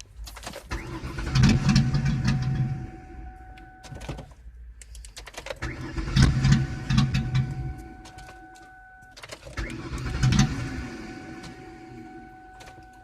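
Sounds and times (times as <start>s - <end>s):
car engine cranking: 0.0s - 13.0s
steady high tone: 1.7s - 4.0s, 6.4s - 9.2s, 9.8s - 13.0s.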